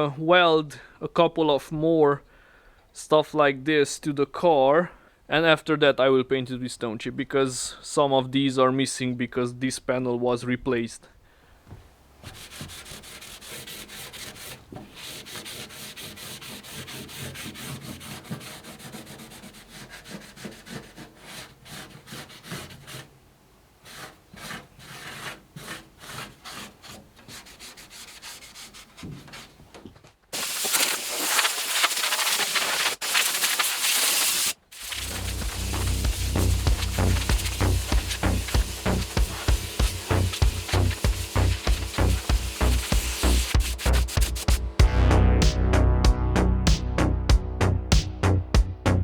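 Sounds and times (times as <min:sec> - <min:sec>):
scouring pad scrubbing panels: 0:12.2 - 0:23.1, 0:23.8 - 0:29.7, 0:30.4 - 0:44.8
loud steady hiss: 0:30.4 - 0:44.9.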